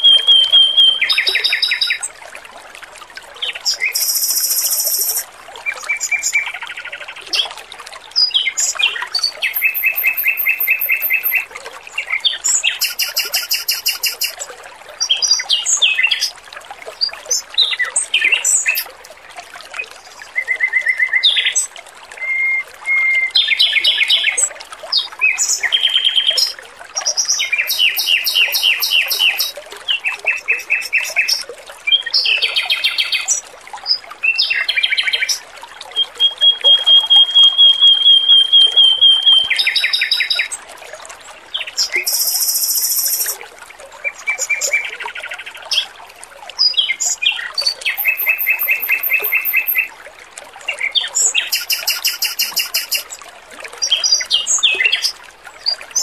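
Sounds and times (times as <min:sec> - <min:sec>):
trickle of water: 0:00.0 - 0:56.0
bird singing rapid trills: 0:03.8 - 0:05.2, 0:09.4 - 0:11.4, 0:12.7 - 0:14.4, 0:27.6 - 0:29.6, 0:30.2 - 0:31.4, 0:36.0 - 0:40.5, 0:42.0 - 0:43.4, 0:47.9 - 0:49.9, 0:51.4 - 0:53.0.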